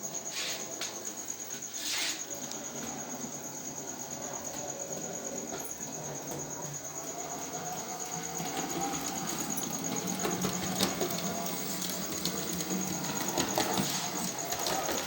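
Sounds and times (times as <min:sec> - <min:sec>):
wheels clicking on rails: 0:02.4 - 0:15.0
electric motor humming: 0:07.4 - 0:15.0.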